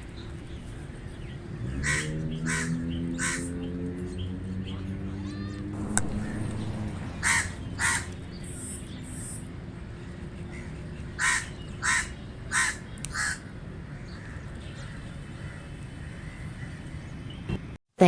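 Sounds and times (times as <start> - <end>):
raven calling: 1.8 - 3.6, 5.8 - 9.4, 11.2 - 13.5.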